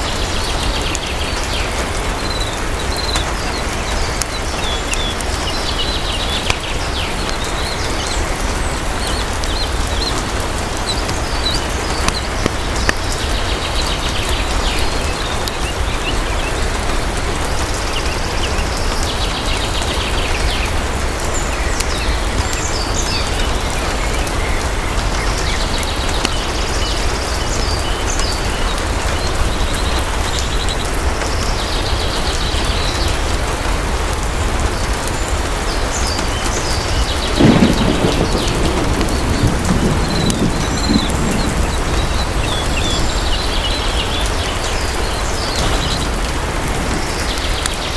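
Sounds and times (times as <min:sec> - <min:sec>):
heavy rain falling: 0:00.0 - 0:47.9
thunder rumbling: 0:37.0 - 0:47.9.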